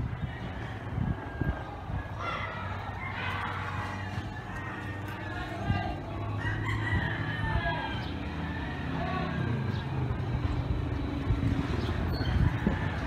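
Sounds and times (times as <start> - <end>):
motorcycle engine idling: 0.0 - 13.0
people talking: 0.5 - 10.6.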